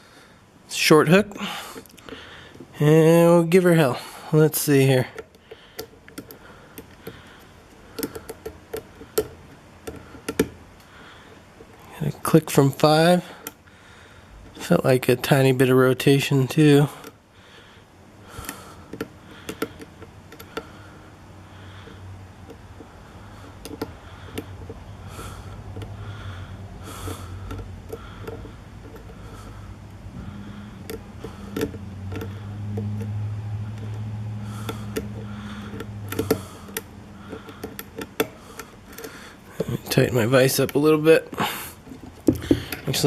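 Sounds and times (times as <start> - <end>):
lock pick clicks and scrapes: 5.2 - 10.6, 18.4 - 20.8, 21.8 - 24.8, 27.0 - 29.5, 30.8 - 40.8
low hum: 17.3 - 40.4.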